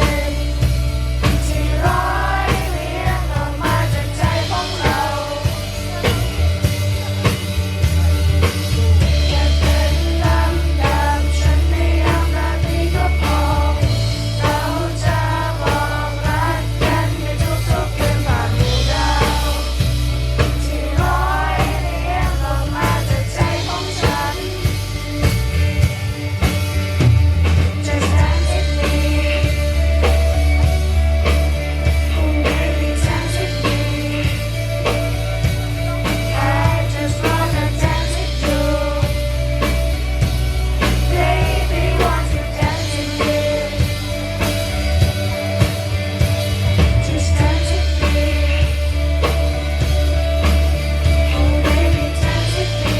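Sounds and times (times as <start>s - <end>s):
person singing: 0.0s - 7.1s, 8.8s - 25.1s, 27.7s - 30.7s, 31.8s - 39.8s, 40.8s - 44.6s, 46.8s - 49.5s, 51.0s - 52.9s
deep bass notes: 0.0s - 52.9s
live band playing: 0.0s - 52.9s.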